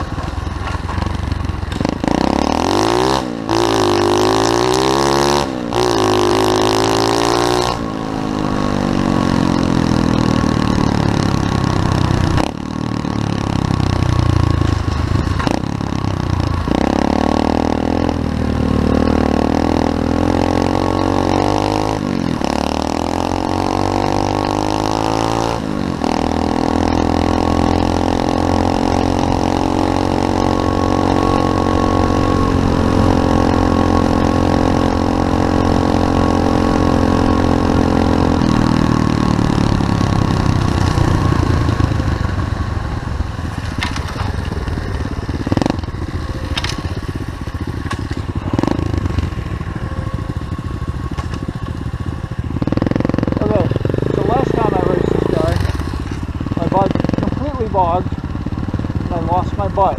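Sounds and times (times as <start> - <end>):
pit bike engine revving: 0.0 - 59.9.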